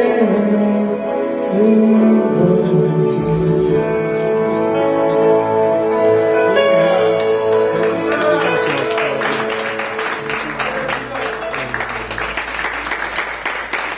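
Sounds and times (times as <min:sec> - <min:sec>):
congregation applause: 0:06.9 - 0:13.9.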